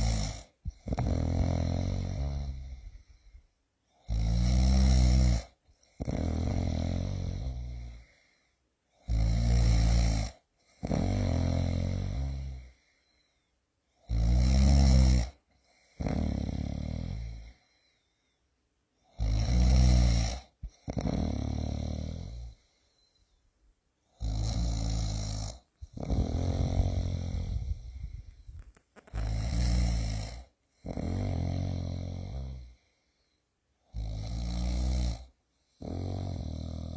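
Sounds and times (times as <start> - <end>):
person snoring: 0.0 - 3.3, 3.9 - 8.3, 9.0 - 12.8, 14.0 - 17.7, 19.0 - 22.7, 24.1 - 32.9, 33.9 - 36.9.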